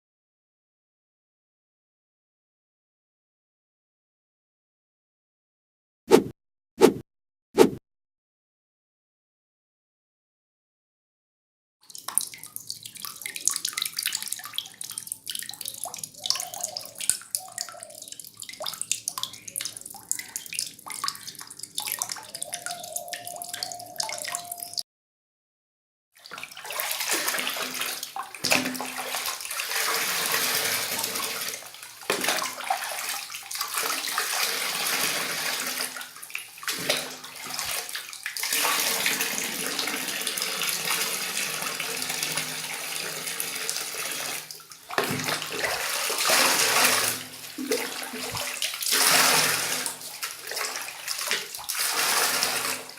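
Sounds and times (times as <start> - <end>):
tap water running into basin: 11.9 - 24.8, 26.2 - 52.9.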